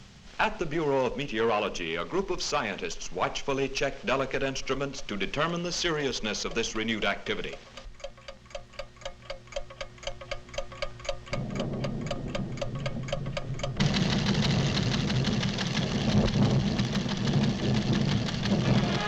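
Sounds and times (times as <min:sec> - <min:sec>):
instrument ticking rapidly: 0:04.2 - 0:19.0
low rumble: 0:11.3 - 0:19.0.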